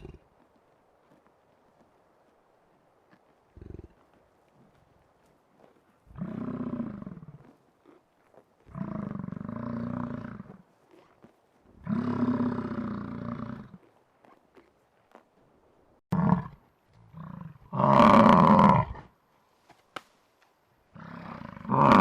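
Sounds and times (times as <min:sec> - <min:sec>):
bison bellowing: 0:21.0 - 0:22.0.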